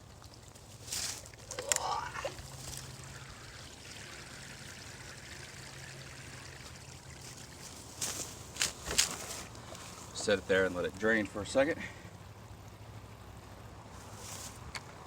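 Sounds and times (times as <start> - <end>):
water trickling from bucket holes: 0.0 - 11.3.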